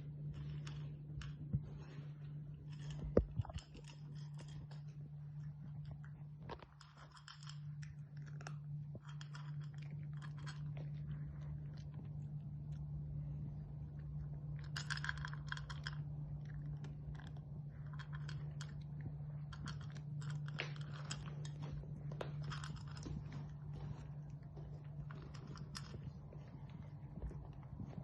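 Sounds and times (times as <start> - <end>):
crunching and chewing: 0.0 - 28.0
steady low hum: 0.0 - 28.0.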